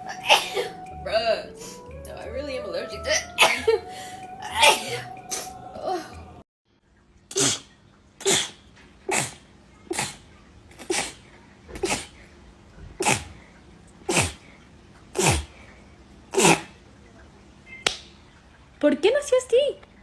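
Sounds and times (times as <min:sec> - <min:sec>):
person sneezing: 0:00.1 - 0:00.7, 0:10.8 - 0:11.2, 0:11.8 - 0:12.2.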